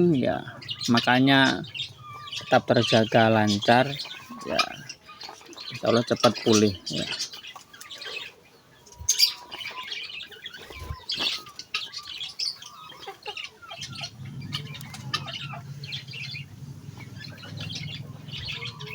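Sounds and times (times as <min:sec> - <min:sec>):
chickens squawking and chirping: 0:00.0 - 0:18.9
low steady hum: 0:13.7 - 0:18.9.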